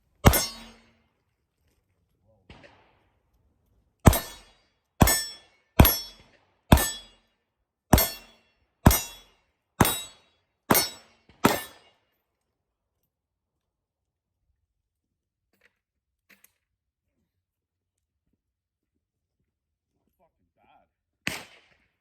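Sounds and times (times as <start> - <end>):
pistol shots: 0.2 - 0.8, 4.1 - 7.1, 9.8 - 11.8.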